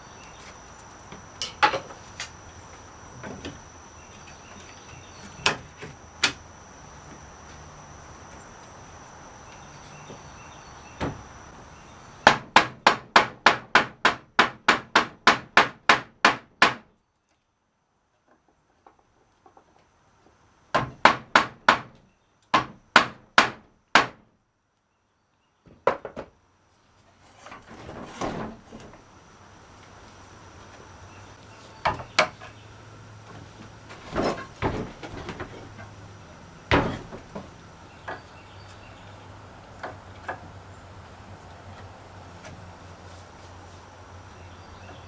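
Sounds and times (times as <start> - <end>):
hammer striking wood: 12.2 - 16.9, 20.7 - 24.2, 36.7 - 37.4.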